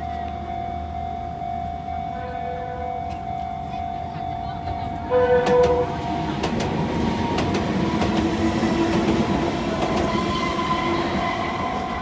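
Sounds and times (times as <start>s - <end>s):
level crossing warning bells: 0.0s - 12.0s
train wheels clattering on rails: 4.6s - 12.0s.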